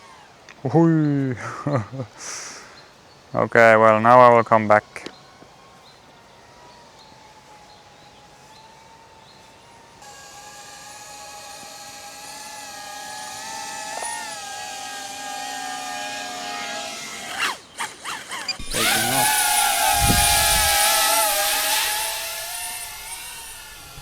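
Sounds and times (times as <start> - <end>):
drone propellers whining: 5.1 - 24.0.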